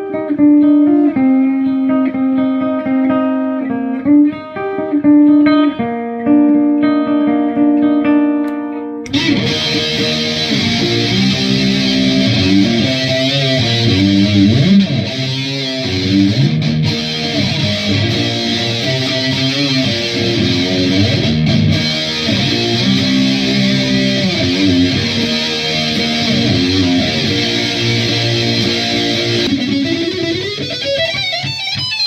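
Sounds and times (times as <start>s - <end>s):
electric guitar playing: 0.0s - 32.0s.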